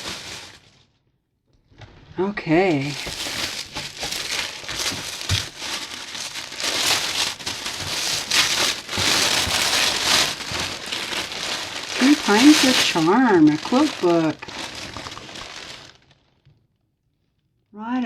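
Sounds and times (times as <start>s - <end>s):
packaging crinkling and rustling: 0.0s - 1.0s, 1.6s - 16.6s.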